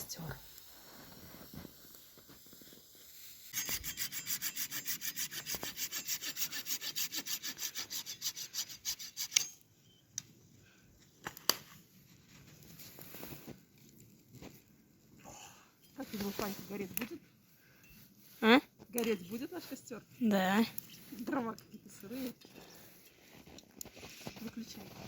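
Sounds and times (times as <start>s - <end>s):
hand saw cutting wood: 3.6s - 9.6s.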